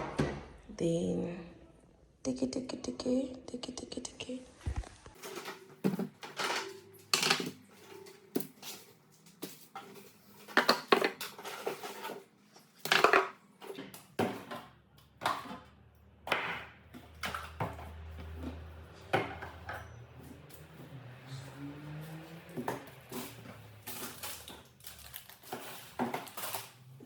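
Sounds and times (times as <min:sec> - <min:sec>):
hard objects clattering: 0:05.1 - 0:27.0.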